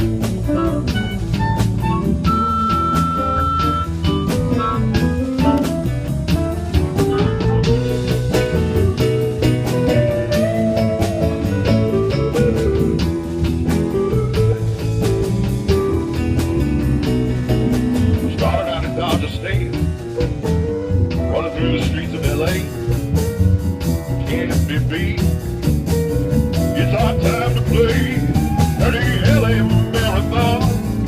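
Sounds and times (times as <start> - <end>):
bass: 0.0 - 31.0
blues guitar melody: 0.0 - 31.0
steady drum beat: 0.0 - 31.0.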